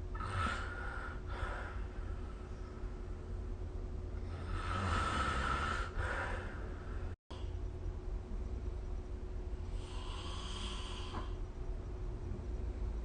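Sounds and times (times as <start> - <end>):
steady low hum: 0.0 - 13.0
person snoring: 0.1 - 1.8, 4.2 - 6.5, 9.8 - 11.4.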